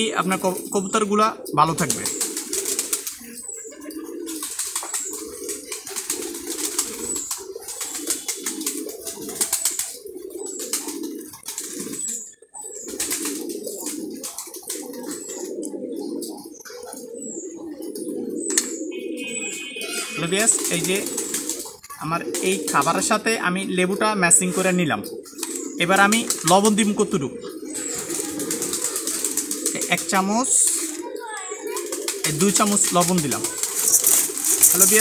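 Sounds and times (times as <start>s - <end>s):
pigeons cooing: 0.0s - 35.0s
grain feed rattling: 32.8s - 35.0s.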